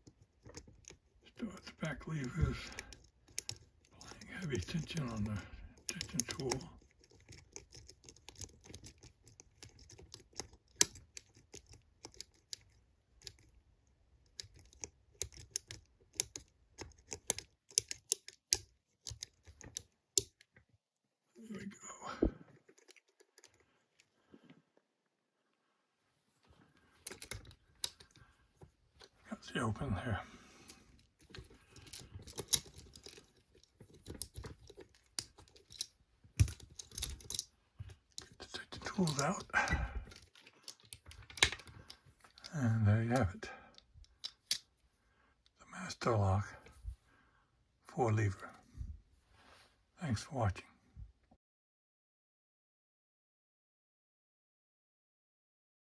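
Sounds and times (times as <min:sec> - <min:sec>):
lock pick clicking and scraping: 0:00.0 - 0:20.6, 0:22.5 - 0:24.2, 0:27.0 - 0:29.2, 0:30.6 - 0:44.8.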